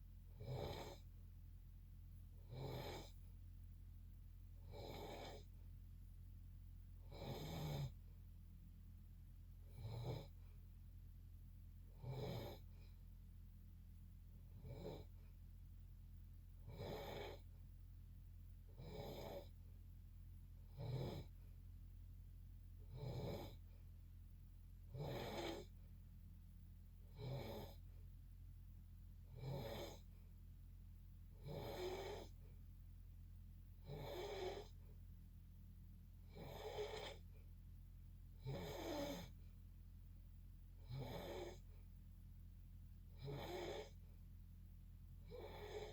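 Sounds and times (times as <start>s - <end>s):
low background hum: 0.0s - 45.9s
rasping snoring: 0.4s - 1.1s, 2.4s - 3.2s, 4.6s - 5.6s, 7.0s - 8.0s, 9.7s - 10.4s, 11.9s - 13.0s, 14.6s - 15.2s, 16.6s - 17.5s, 18.7s - 19.6s, 20.7s - 21.4s, 22.9s - 23.7s, 24.9s - 25.8s, 27.1s - 27.8s, 29.3s - 30.1s, 31.4s - 32.4s, 33.8s - 34.8s, 36.2s - 37.3s, 38.4s - 39.4s, 40.8s - 41.7s, 43.1s - 44.0s, 45.2s - 45.9s.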